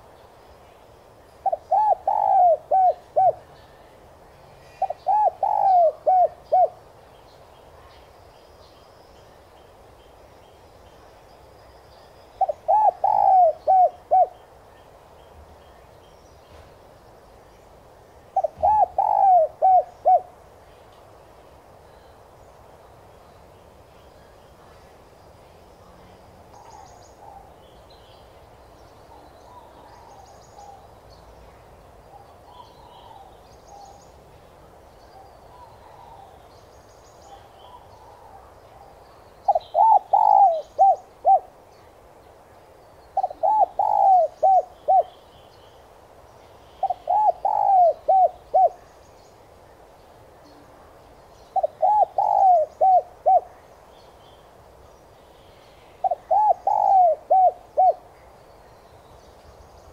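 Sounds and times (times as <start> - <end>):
dove cooing: 1.4 - 3.5, 4.7 - 6.8, 12.4 - 14.4, 18.4 - 20.4, 39.5 - 41.6, 43.2 - 45.2, 46.8 - 48.8, 51.6 - 53.6, 56.0 - 58.2.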